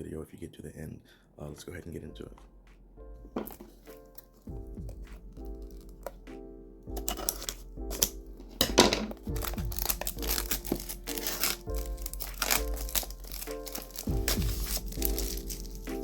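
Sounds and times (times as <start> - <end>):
background music with bass line: 2.2 - 16.0
foil pack crinkling and tearing: 7.0 - 8.2, 9.1 - 16.0.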